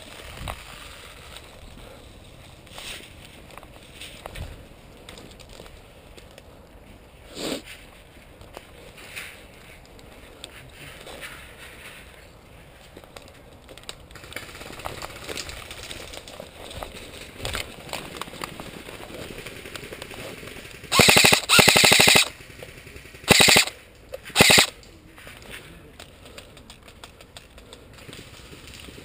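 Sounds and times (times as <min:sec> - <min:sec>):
quiet rustling: 0:00.0 - 0:14.2
airsoft rifle full-auto bursts: 0:20.4 - 0:24.8.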